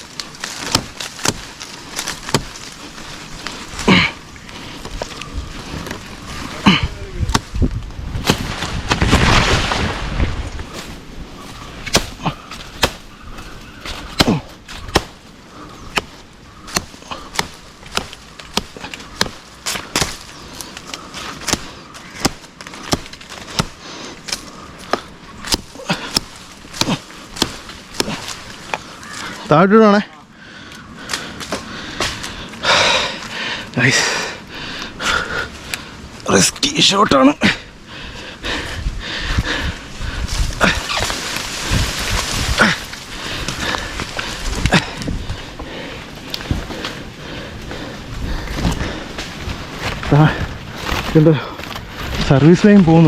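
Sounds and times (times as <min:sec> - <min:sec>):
leaves rustling: 0:00.0 - 0:53.0
knife hacking at stems: 0:14.1 - 0:15.2, 0:15.9 - 0:20.3, 0:21.3 - 0:28.4.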